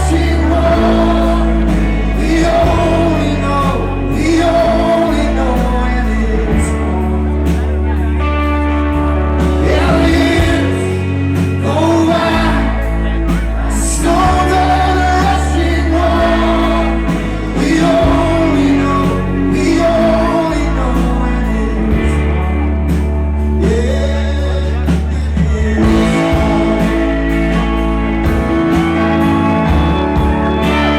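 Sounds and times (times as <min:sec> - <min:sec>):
live rock band playing: 0:00.0 - 0:30.9
person singing: 0:00.0 - 0:30.9.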